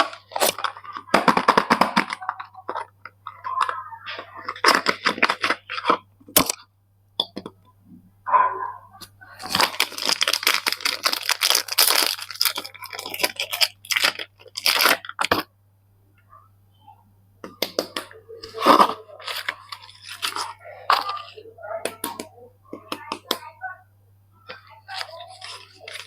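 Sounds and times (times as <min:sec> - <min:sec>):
wrapper crinkling and tearing: 0:00.0 - 0:02.9, 0:03.6 - 0:06.6, 0:09.4 - 0:15.4, 0:17.7 - 0:22.2, 0:24.5 - 0:26.0
faint low hum: 0:00.0 - 0:26.0.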